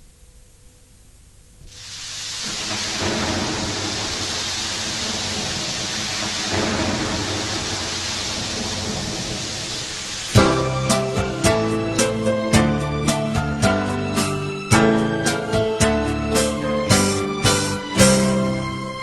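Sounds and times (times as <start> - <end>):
heavy rain: 1.6 - 15.5, 16.1 - 19.0
thunder rumbling: 1.7 - 12.3.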